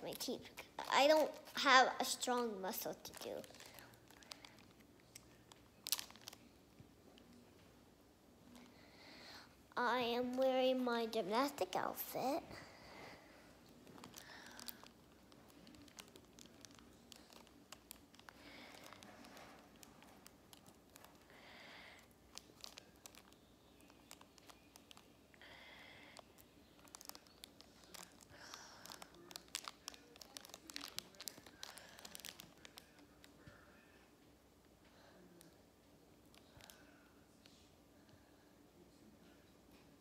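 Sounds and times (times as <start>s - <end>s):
plastic wrapper crinkling and tearing: 0.1s - 6.6s, 13.0s - 25.2s, 26.0s - 33.6s, 36.3s - 37.6s.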